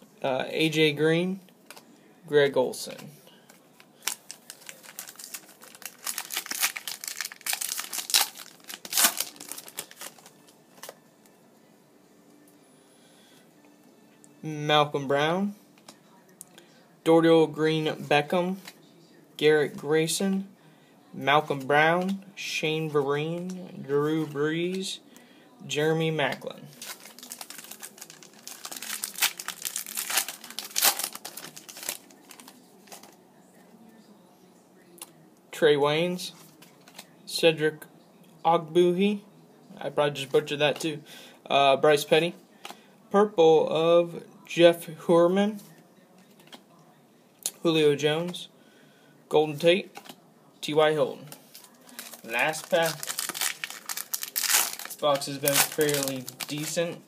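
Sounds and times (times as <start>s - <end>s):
plastic wrapper tearing and crinkling: 4.0s - 11.0s, 26.7s - 33.2s, 51.4s - 56.9s.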